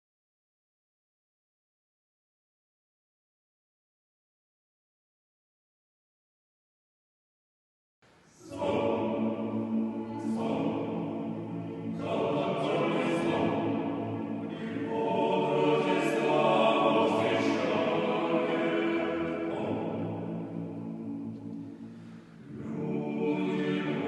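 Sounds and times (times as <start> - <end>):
men's choir singing a cappella: 8.3 - 24.0.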